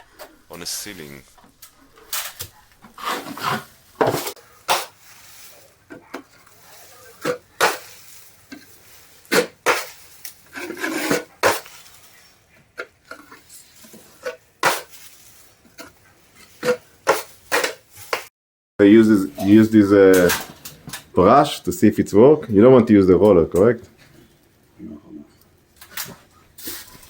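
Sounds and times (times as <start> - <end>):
drywall knife scraping compound: 2.3 - 5.1, 9.3 - 11.8, 13.2 - 15.2.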